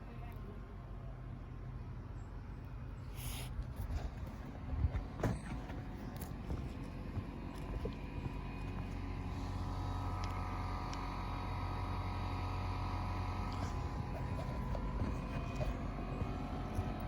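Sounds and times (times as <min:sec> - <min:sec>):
engine running steadily: 0:00.0 - 0:17.0.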